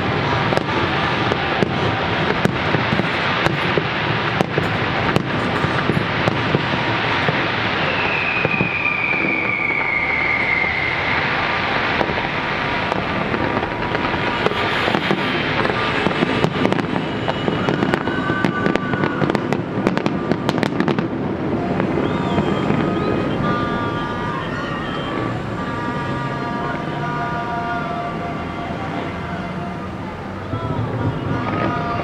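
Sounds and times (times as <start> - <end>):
firework falling whistle: 0.0 - 32.0
crackling firework pops: 0.2 - 23.7.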